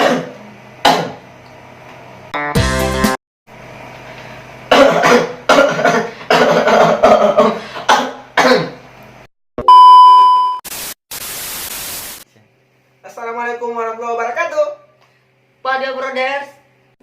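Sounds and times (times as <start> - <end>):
person coughing: 0.0 - 1.2, 4.7 - 8.8
loud steady beep: 9.6 - 10.6
static hiss: 10.7 - 12.3.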